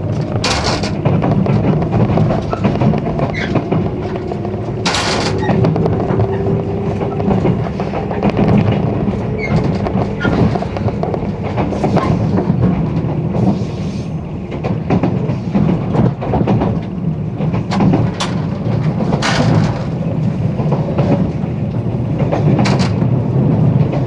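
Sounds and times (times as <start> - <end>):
train car rumble: 0.0 - 24.0
wheels clicking on rails: 0.0 - 24.0.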